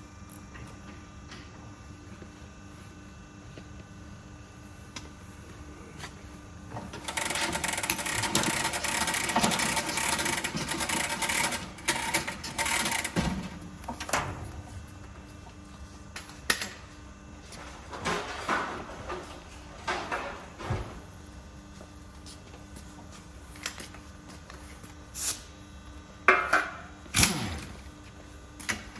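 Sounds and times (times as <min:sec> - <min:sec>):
low machine hum: 0:00.0 - 0:28.9.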